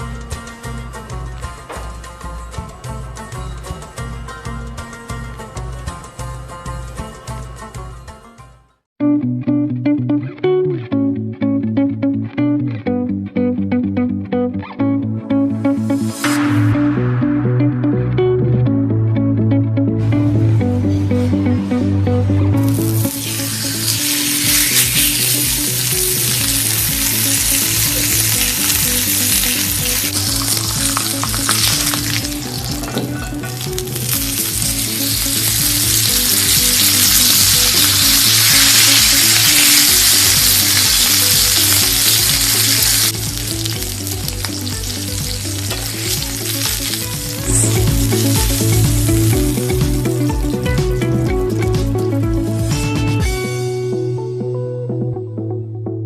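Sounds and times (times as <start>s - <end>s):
background music with bass: 0.0s - 56.0s
food sizzling in a pan: 22.6s - 50.7s.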